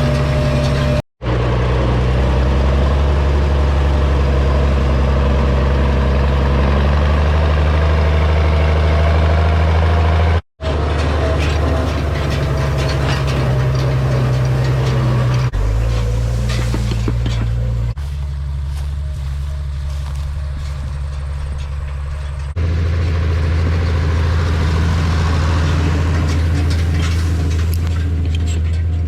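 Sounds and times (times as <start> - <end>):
tractor engine running: 0.0 - 29.0
clattering and rattling: 10.7 - 18.1, 19.7 - 22.6, 23.4 - 29.0.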